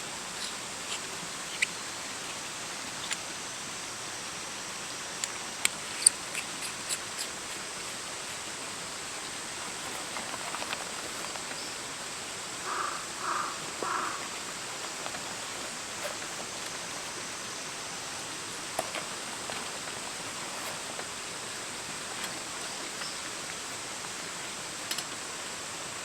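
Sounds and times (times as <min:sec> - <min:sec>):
steady outdoor hiss: 0:00.0 - 0:26.0
crow cawing: 0:12.6 - 0:14.4.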